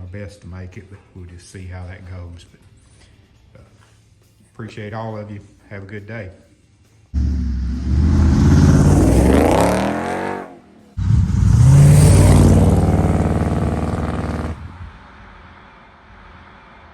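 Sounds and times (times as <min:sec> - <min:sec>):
car engine revving hard: 0:07.2 - 0:14.7.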